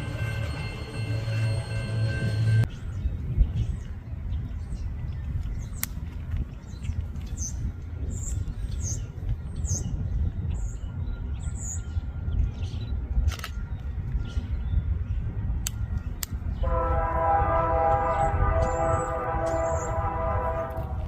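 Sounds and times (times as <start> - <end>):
birds chirping: 0.0 - 21.0
locomotive air horn chord: 16.6 - 21.0.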